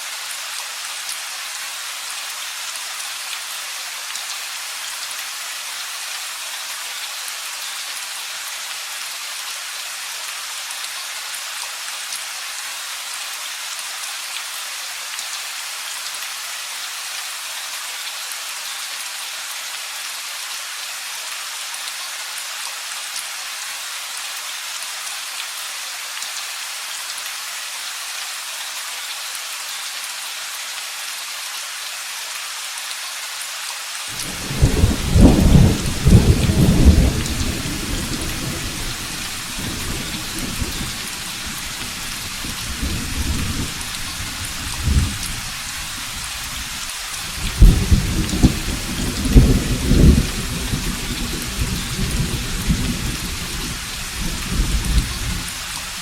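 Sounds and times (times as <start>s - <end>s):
steady rain hissing: 0.0s - 56.0s
thunder rumbling: 34.2s - 53.2s.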